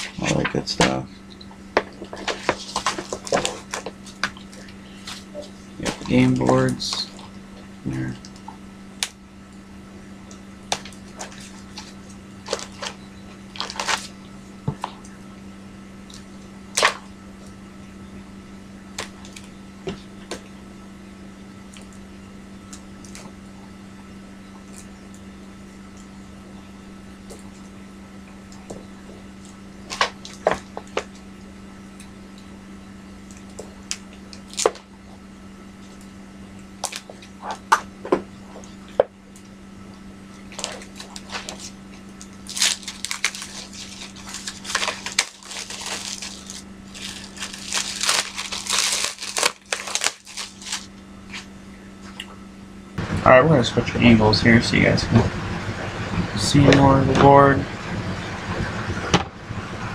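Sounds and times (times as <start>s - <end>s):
steady low hum: 0.0s - 59.9s
game components tapping and rustling: 42.5s - 50.9s.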